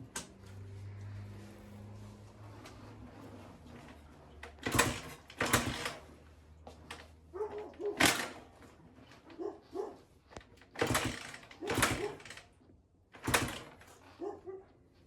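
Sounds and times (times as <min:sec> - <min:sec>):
motorcycle engine start attempts: 0:02.7 - 0:14.3.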